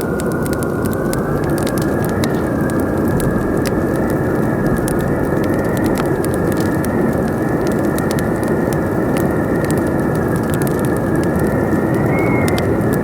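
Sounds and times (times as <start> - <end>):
campfire crackling and popping: 0.0 - 13.0
wind rushing: 10.9 - 13.0.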